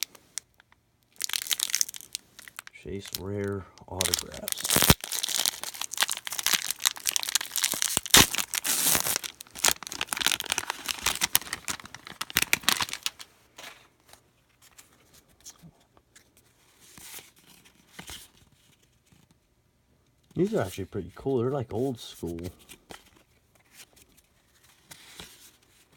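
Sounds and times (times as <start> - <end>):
wrapper tearing and crinkling: 0.0 - 0.5, 1.1 - 13.3.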